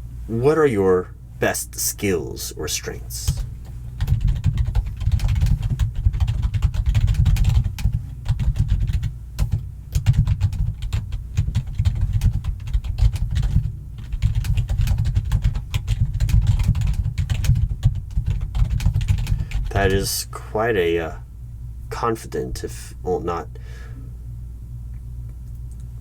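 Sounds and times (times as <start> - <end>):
fast typing on keyboard: 3.2 - 20.1.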